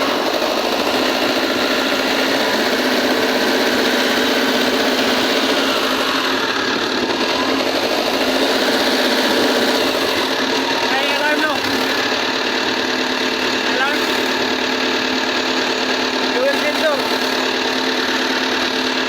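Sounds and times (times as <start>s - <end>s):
excavator diesel engine running: 0.0s - 19.0s.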